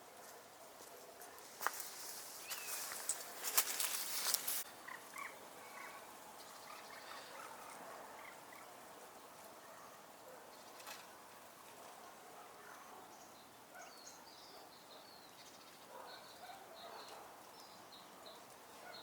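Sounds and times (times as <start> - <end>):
small birds chirping: 1.6 - 11.1, 11.8 - 19.0.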